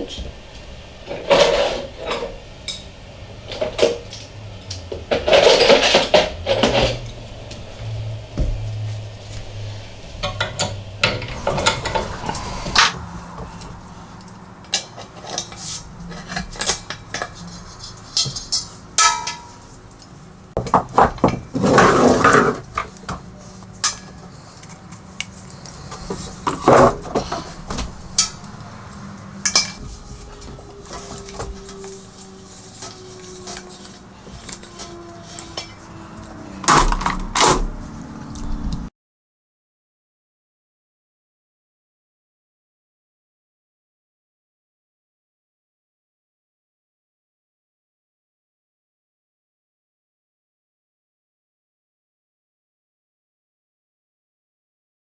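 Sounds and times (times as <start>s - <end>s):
metal tools clinking and clanking: 1.1s - 7.3s, 10.2s - 38.6s.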